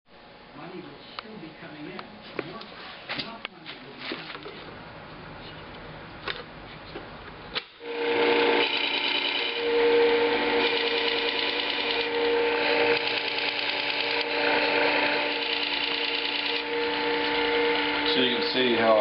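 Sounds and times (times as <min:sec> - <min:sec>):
disc sharpener grinding chisel: 0:07.8 - 0:19.0.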